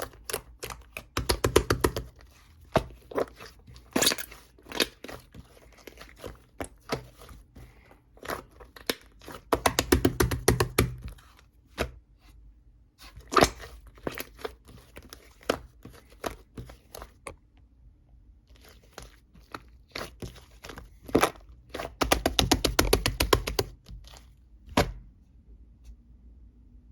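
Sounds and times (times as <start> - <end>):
close-up crunching and crackling: 0.0 - 9.8, 13.0 - 17.3, 18.4 - 22.2.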